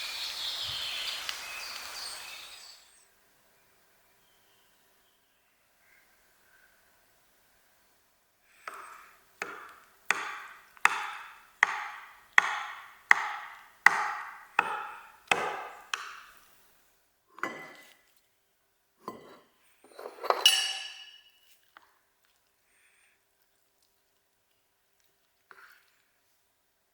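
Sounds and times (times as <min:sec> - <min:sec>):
irregular knocks: 0:09.4 - 0:16.2
sharp ringing strikes: 0:20.5 - 0:21.3.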